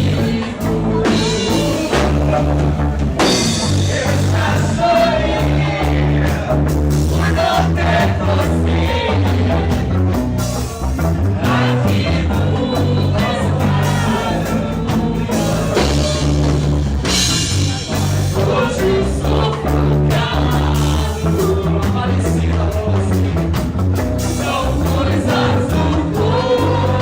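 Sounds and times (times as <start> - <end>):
person singing: 0.0 - 2.8
drums: 0.0 - 27.0
held bass notes: 0.0 - 27.0
rock band playing live: 0.0 - 27.0.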